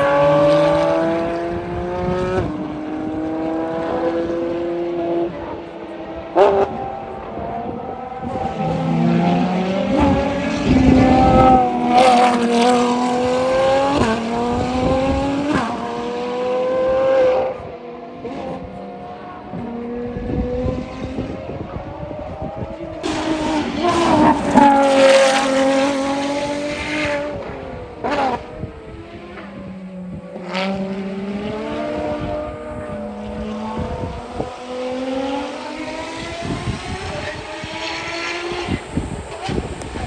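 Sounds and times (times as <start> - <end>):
race car engines accelerating past: 0.0 - 40.0
engine drone: 23.0 - 27.0.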